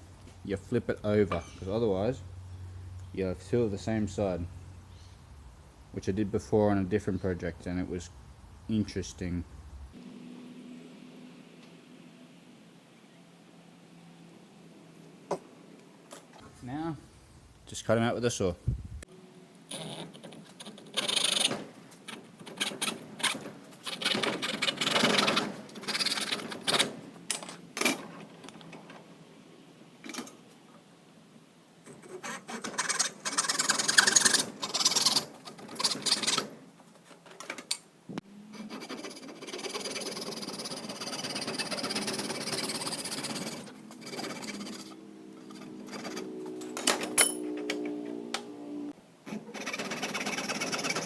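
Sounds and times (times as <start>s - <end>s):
saw cutting: 20.0s - 27.0s, 31.9s - 36.6s, 38.5s - 47.6s, 49.2s - 51.0s.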